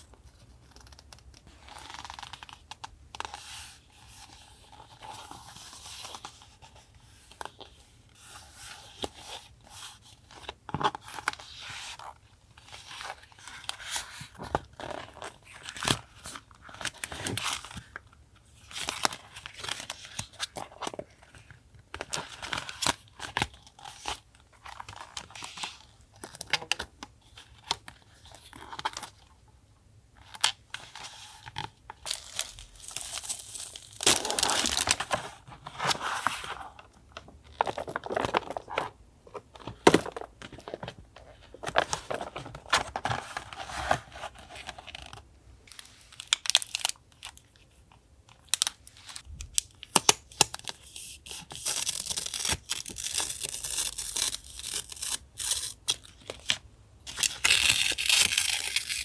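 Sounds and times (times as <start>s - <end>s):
paper tearing and crinkling: 57.1s - 59.0s.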